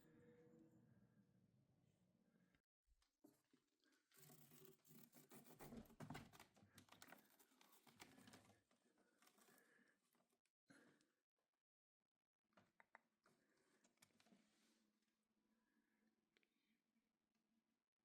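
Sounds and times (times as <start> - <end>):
faint scratching and rustling: 3.9 - 9.6.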